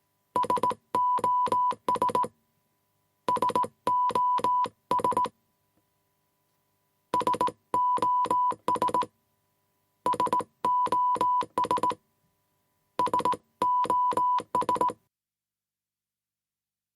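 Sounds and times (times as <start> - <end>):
morse code beeps: 0.4 - 2.3, 3.3 - 5.3, 7.2 - 9.1, 10.1 - 12.0, 13.0 - 15.0.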